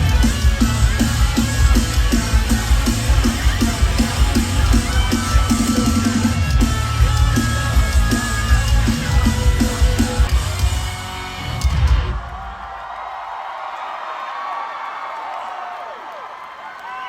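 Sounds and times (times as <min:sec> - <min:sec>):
pop-punk rock band playing: 0:00.0 - 0:12.4
distorted electric guitars: 0:00.0 - 0:12.6
pounding drum kit: 0:00.0 - 0:13.1.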